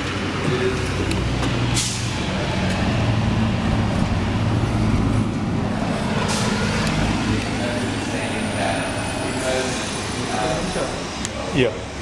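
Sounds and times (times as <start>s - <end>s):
heavy vehicle engine running: 0.0s - 12.0s
street traffic: 0.0s - 12.0s.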